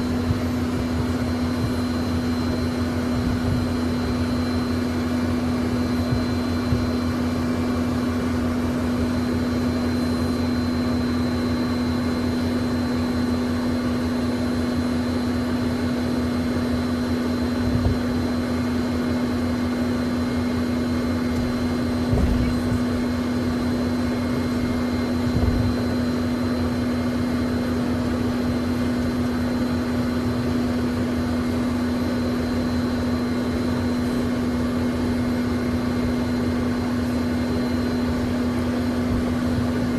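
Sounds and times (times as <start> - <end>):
jet engines humming and whining: 0.0 - 39.9
low thumps: 22.0 - 23.0.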